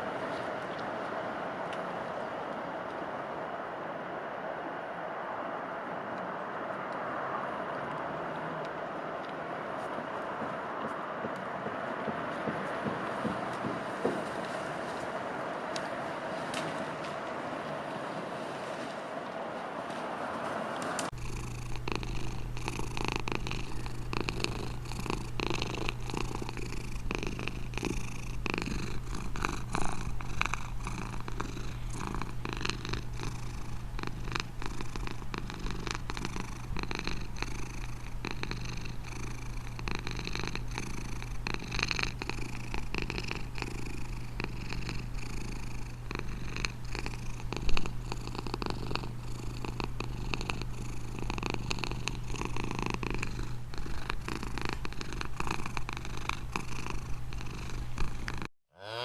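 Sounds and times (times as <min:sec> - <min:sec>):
knocks: 0:10.0 - 0:14.5
cat purring: 0:21.1 - 0:59.0.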